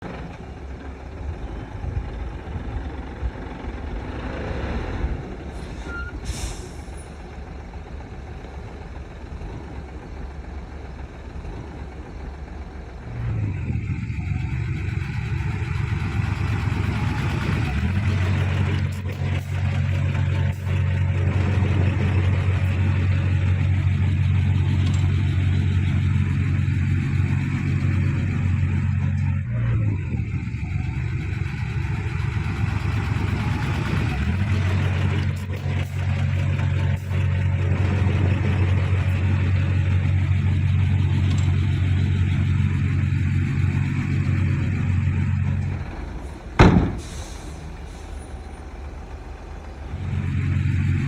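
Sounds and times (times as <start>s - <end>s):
deep steady engine drone: 0.0s - 51.0s
heavy diesel machinery: 0.0s - 51.0s
short hiss: 46.9s - 48.2s.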